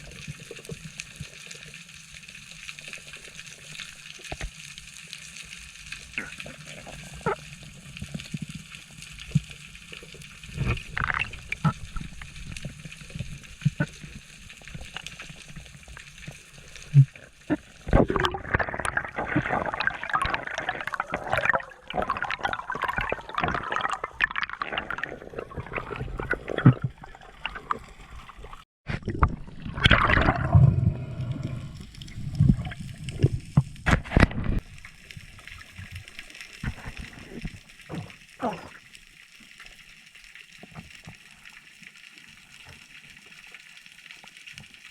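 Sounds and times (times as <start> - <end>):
sea water gurgling and splashing: 0.0 - 44.9
rushing water: 6.0 - 39.1.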